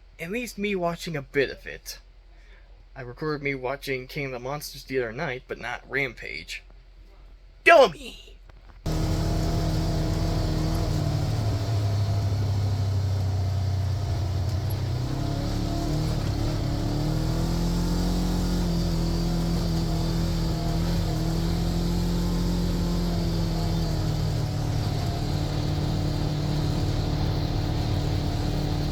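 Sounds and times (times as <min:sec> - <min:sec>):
vehicle engine running: 0:08.9 - 0:28.9.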